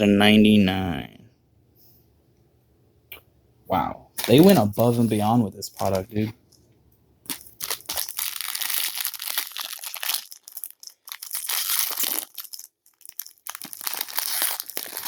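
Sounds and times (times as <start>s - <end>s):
plastic packaging crinkling: 4.2s - 6.2s, 7.3s - 15.0s.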